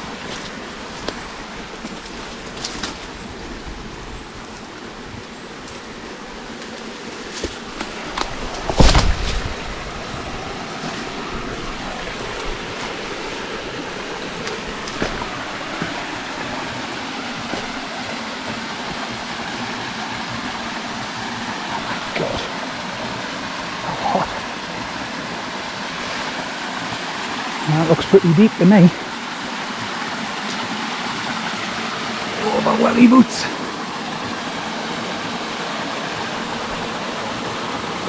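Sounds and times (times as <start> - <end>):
stream water running: 0.0 - 38.0
loud thump: 8.6 - 9.7.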